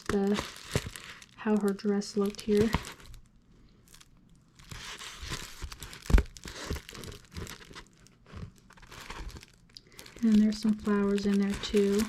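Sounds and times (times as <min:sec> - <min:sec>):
canvas and plastic film rustling: 0:00.0 - 0:12.0.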